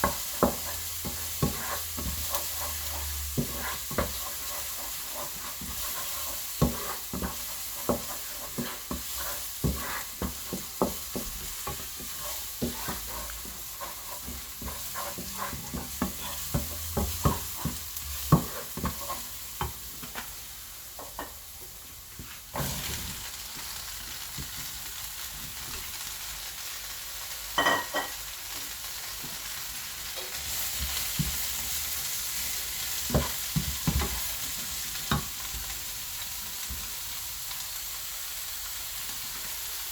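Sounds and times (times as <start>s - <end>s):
utensil scraping against pan: 0.0s - 19.3s
food sizzling in a pan: 0.0s - 39.9s.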